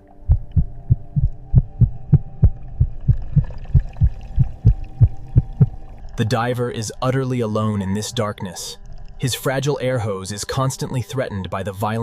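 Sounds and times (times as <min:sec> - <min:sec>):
low drone: 0:00.0 - 0:11.6
heartbeat thumps: 0:00.3 - 0:05.8.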